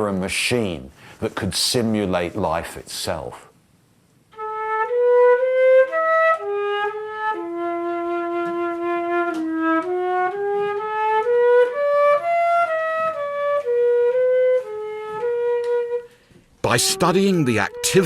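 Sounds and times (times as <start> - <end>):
flute playing slow melody: 4.4 - 18.0.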